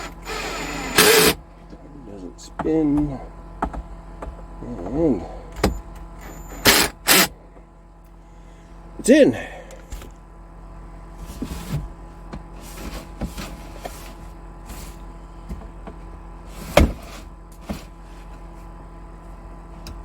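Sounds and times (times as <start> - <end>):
cordless drill driving screws: 0.0 - 1.4, 6.2 - 7.3.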